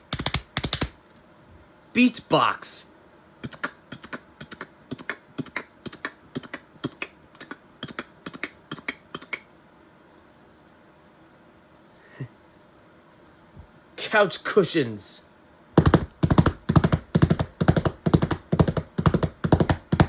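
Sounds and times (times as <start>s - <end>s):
beatboxed horse hoofbeats: 0.0s - 0.9s, 3.4s - 9.5s, 15.8s - 20.0s.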